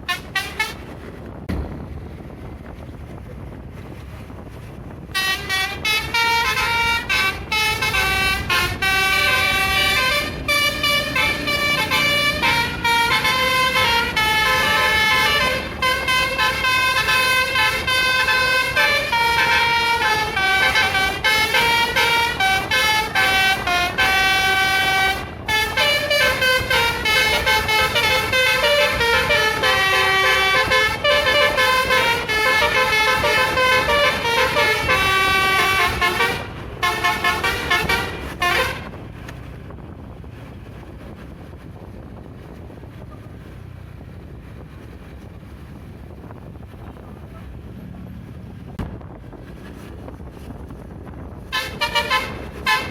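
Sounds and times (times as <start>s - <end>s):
musical air horn playing a tune: 0.0s - 0.9s, 5.1s - 39.0s, 51.5s - 52.9s
bus engine running: 0.0s - 52.9s.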